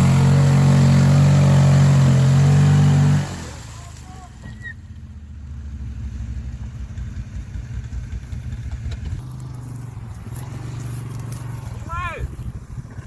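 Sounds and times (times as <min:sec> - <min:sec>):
atv engine running: 0:00.0 - 0:03.9, 0:04.9 - 0:13.0.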